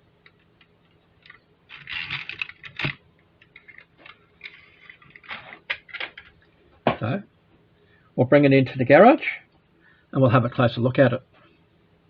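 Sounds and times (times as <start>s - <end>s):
small clicks and knocks: 0.1s - 7.0s
rustling: 0.2s - 6.4s.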